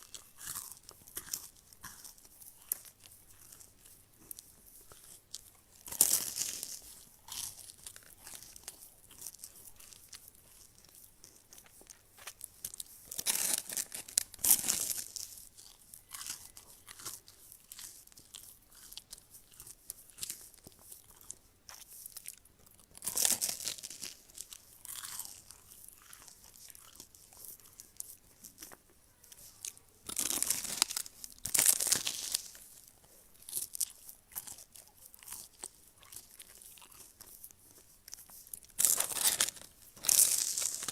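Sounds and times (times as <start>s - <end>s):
crunchy food crunching: 0.0s - 40.9s
chewing clicks: 33.4s - 40.9s.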